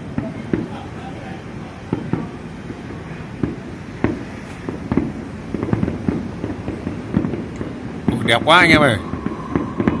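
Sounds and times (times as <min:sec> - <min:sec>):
fireworks bangs: 0:00.0 - 0:10.0
low rumble: 0:04.8 - 0:10.0.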